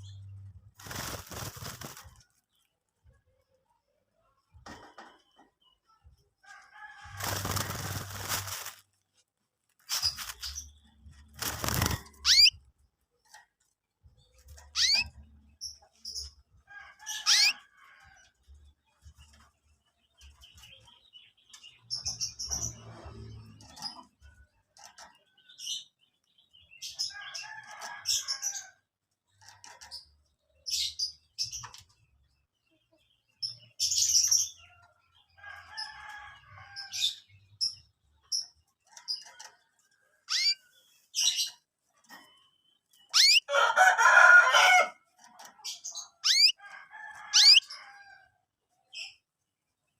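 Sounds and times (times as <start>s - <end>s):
canaries chirping: 0.0s - 2.0s, 6.8s - 8.8s, 9.8s - 13.4s, 14.4s - 17.8s, 20.1s - 24.2s, 40.2s - 48.0s.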